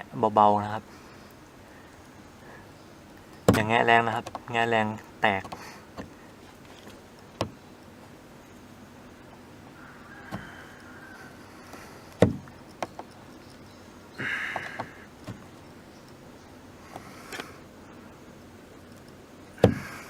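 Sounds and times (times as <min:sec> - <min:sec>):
plastic clicks and knocks: 0:03.5 - 0:04.5.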